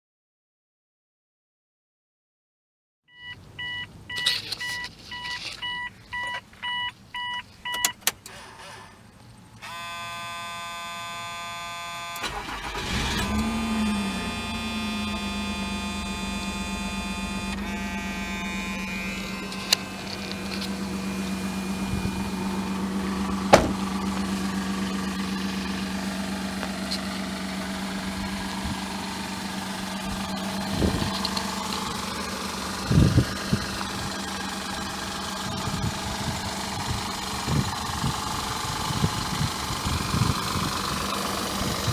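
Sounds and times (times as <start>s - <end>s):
electronic beeping: 3.1s - 8.0s
car engine idling: 3.2s - 41.9s
engine cranking on starter: 3.2s - 41.9s.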